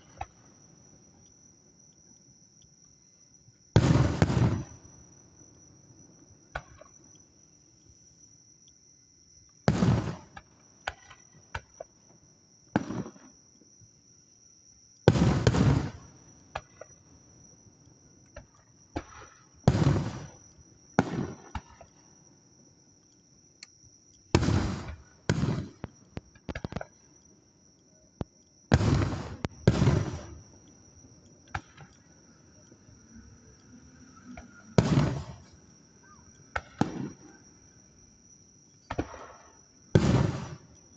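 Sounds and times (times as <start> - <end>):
fireworks pops and crackles: 0.0 - 0.5, 3.8 - 4.9, 6.5 - 7.0, 9.6 - 11.9, 12.7 - 13.4, 15.0 - 17.0, 18.3 - 22.0, 24.3 - 27.0, 28.2 - 30.6, 31.5 - 32.1, 34.3 - 35.6, 36.5 - 37.4, 38.8 - 40.7
fireworks booms: 3.7 - 5.0, 9.6 - 11.8, 12.7 - 13.4, 15.0 - 17.0, 18.4 - 22.0, 24.3 - 26.9, 28.7 - 30.6, 34.4 - 35.6, 36.5 - 37.5, 38.8 - 40.7.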